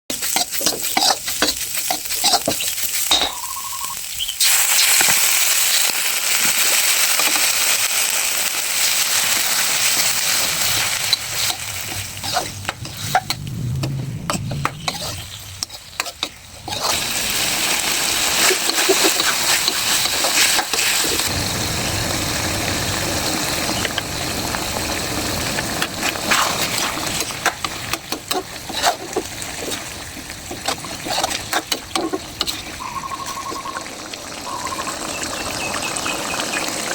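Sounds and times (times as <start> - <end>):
stirring clicks and scrapes: 0.1 - 3.2, 18.4 - 21.3, 25.8 - 32.8
food sizzling in a pan: 0.1 - 36.9.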